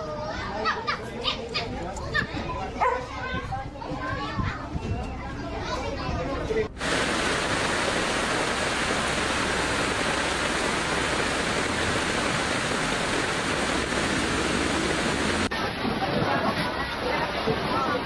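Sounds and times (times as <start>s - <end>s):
water rushing: 6.8s - 15.8s.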